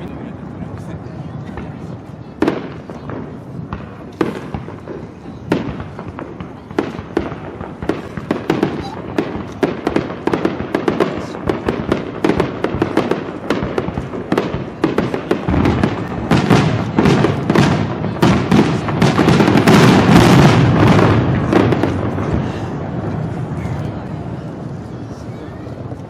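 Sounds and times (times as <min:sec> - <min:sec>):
fireworks bursting and crackling: 0:00.0 - 0:26.0.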